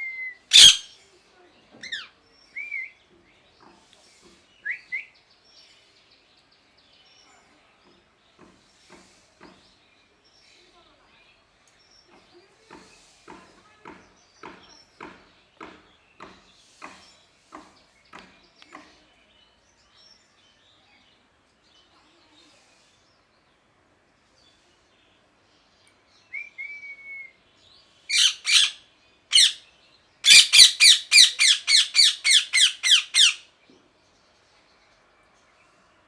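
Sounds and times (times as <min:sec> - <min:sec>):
parakeet screeching: 0:00.5 - 0:00.9, 0:28.1 - 0:29.6, 0:30.2 - 0:33.4
parakeet whistle: 0:00.5 - 0:00.9, 0:28.1 - 0:29.6, 0:30.3 - 0:33.4.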